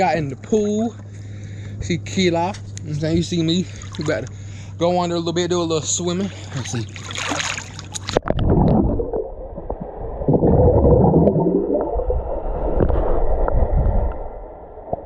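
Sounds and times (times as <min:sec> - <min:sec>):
muffled underwater water gurgling: 0:06.2 - 0:15.0.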